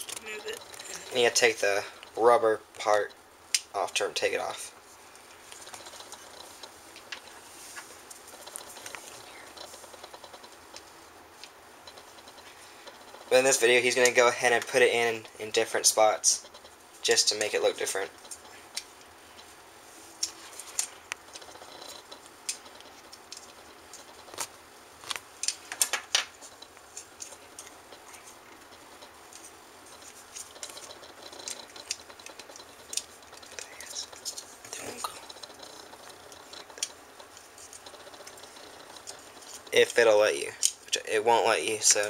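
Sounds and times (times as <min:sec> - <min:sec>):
plastic parts clicking: 0:29.3 - 0:35.7.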